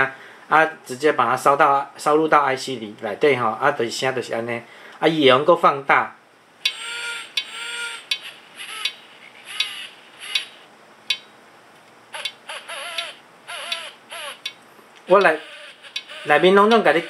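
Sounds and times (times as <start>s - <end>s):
clicks: 8.1s - 16.2s
recorded owl hoots from speaker: 12.1s - 17.0s.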